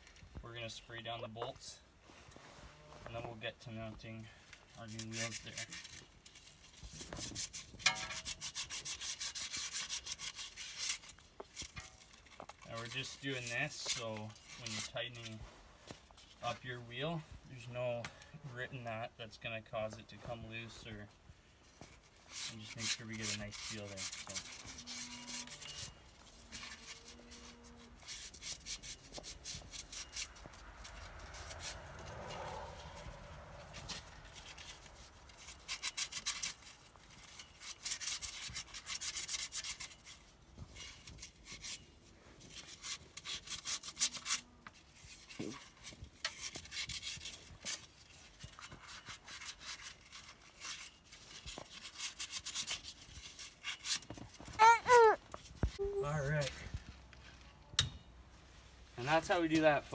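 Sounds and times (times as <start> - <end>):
sandpaper rubbing on metal: 7.1 - 11.2, 22.3 - 30.4, 34.4 - 40.2, 42.5 - 44.4, 48.8 - 54.0.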